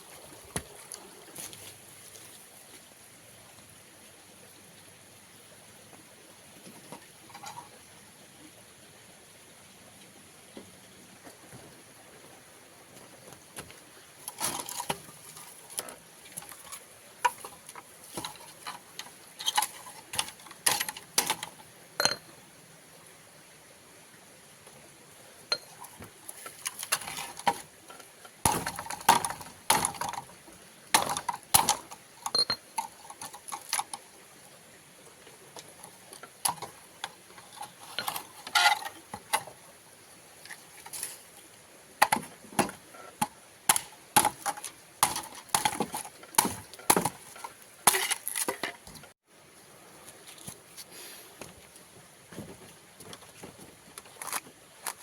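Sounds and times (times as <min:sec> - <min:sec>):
firewood being handled: 0:00.0 - 0:02.9, 0:13.0 - 0:22.2, 0:25.5 - 0:34.2, 0:35.5 - 0:39.6, 0:40.3 - 0:49.2.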